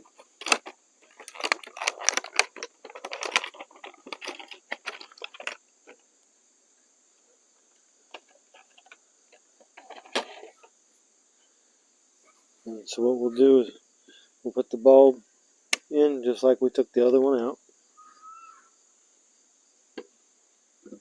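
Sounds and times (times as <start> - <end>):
packaging rustling and clicking: 0.0 - 6.0, 8.1 - 9.0, 9.7 - 10.7
crickets chirping: 0.0 - 21.0.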